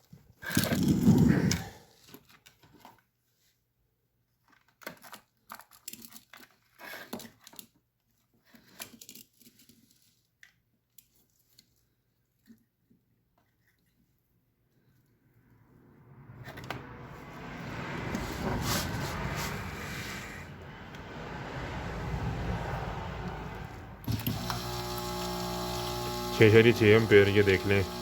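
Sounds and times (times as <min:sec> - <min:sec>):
hands handling parts and wires: 0:04.4 - 0:14.3.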